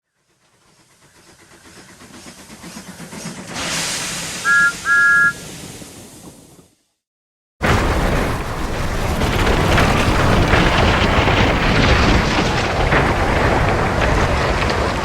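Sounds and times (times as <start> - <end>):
steam locomotive chuffing: 0.0 - 6.7, 7.6 - 15.0
steam hiss: 0.3 - 6.7
two-note train whistle blasts: 4.4 - 5.5.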